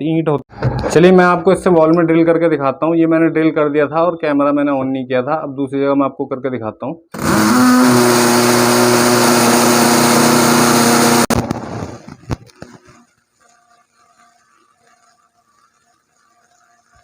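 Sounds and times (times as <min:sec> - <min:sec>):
cordless drill boring into brick: 0:07.2 - 0:12.0.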